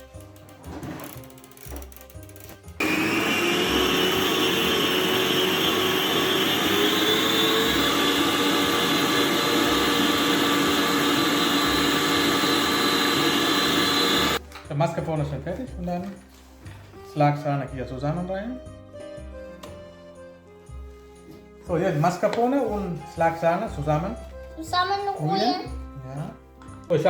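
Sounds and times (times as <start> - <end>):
electric mixer running: 2.8 - 14.4.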